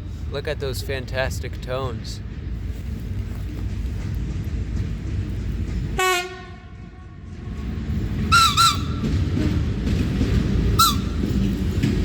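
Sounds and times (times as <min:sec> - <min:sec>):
train rumble: 0:00.0 - 0:12.0
low train horn note: 0:06.0 - 0:07.6.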